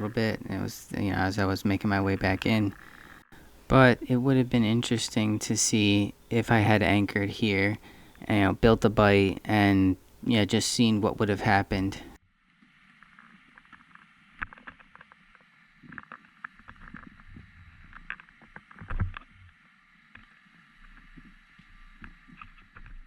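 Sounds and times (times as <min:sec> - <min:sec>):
faint hiss: 0:00.0 - 0:12.2
underwater clicks and crackles: 0:13.3 - 0:23.0.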